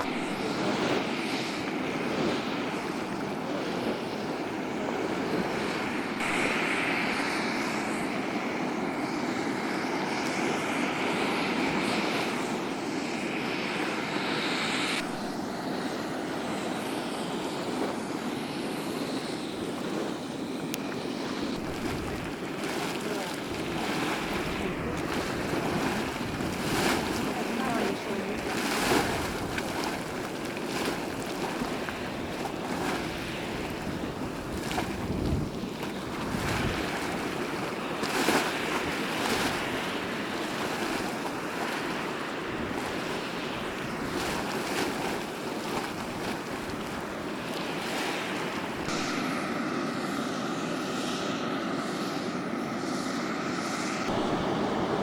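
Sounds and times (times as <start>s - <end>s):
steam rushing and hissing: 5.6s - 15.0s, 21.4s - 49.8s.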